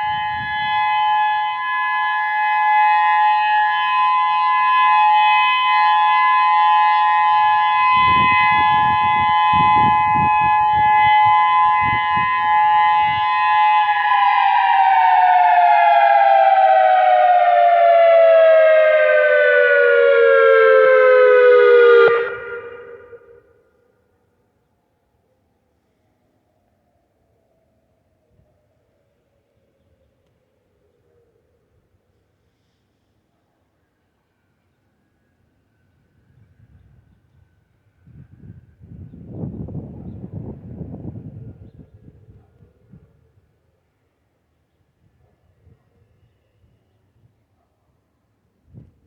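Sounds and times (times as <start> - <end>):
electronic warning siren: 0.0 - 23.5.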